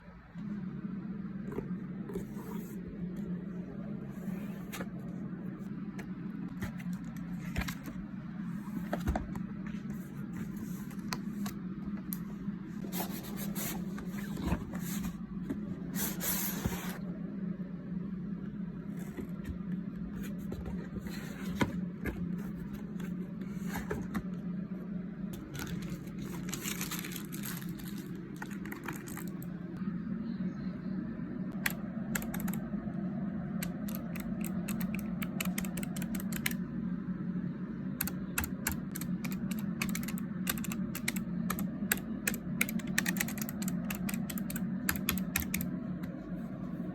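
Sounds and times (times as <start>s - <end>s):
steady low hum: 0.0s - 46.9s
cardboard and plastic rustling: 25.4s - 29.5s.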